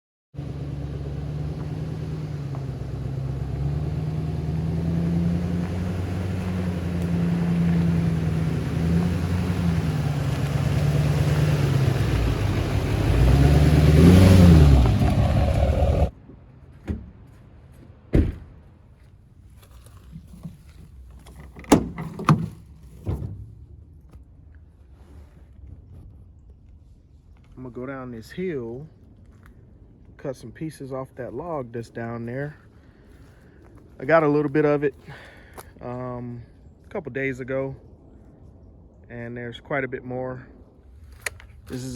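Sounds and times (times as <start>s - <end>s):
engine running and revving: 0.4s - 16.1s.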